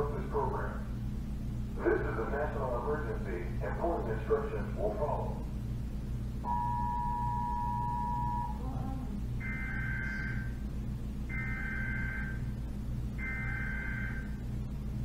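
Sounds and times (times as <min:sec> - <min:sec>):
steady low hum: 0:00.0 - 0:15.0
two-pitch digital signal bursts: 0:09.4 - 0:10.6, 0:11.3 - 0:12.5, 0:13.2 - 0:14.4.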